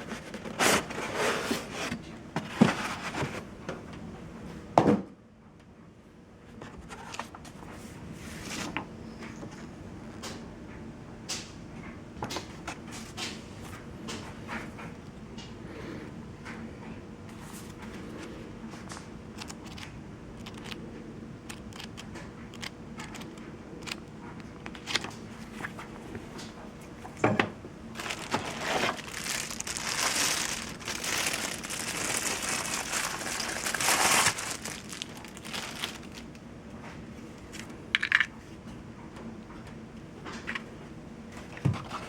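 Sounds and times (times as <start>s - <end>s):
packaging crinkling and rustling: 18.9s - 20.8s, 21.5s - 25.9s, 27.9s - 38.2s.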